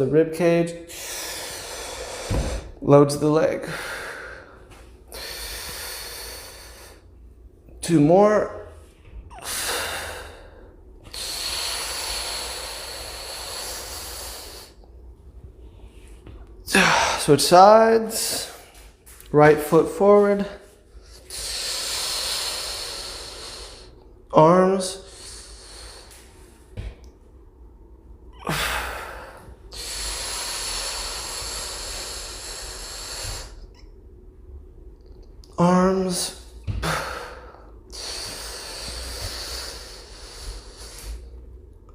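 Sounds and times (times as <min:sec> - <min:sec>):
long hissing exhale: 0:00.9 - 0:02.8, 0:09.4 - 0:14.8, 0:21.1 - 0:24.0, 0:25.0 - 0:26.5, 0:28.4 - 0:33.7, 0:36.8 - 0:41.4
person breathing: 0:00.9 - 0:02.8, 0:03.6 - 0:07.2, 0:09.4 - 0:14.9, 0:15.6 - 0:17.3, 0:20.4 - 0:24.0, 0:24.9 - 0:26.6, 0:28.4 - 0:33.7, 0:36.4 - 0:41.4
person breathing in: 0:00.9 - 0:02.8.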